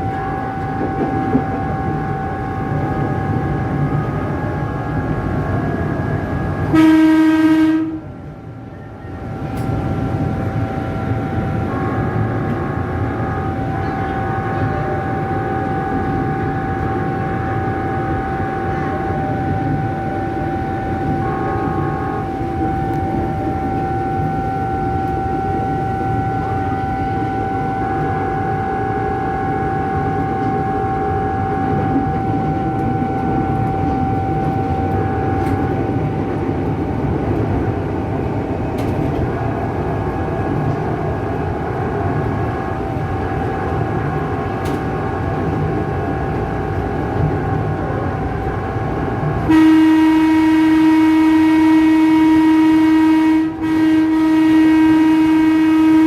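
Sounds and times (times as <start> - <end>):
electric train rumble and whine: 0.0 - 56.0
electric train horn: 6.6 - 8.2, 10.8 - 35.7, 49.4 - 56.0.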